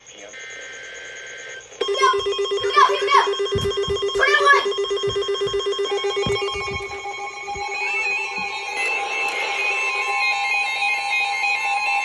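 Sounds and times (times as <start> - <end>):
low electronic alert tone pulsing: 1.8 - 7.8
higher steady tones: 1.8 - 8.7.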